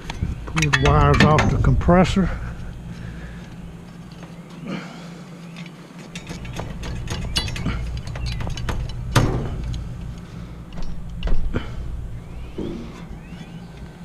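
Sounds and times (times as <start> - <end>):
small metallic clicks and rattles: 0.0 - 1.7, 5.4 - 11.5.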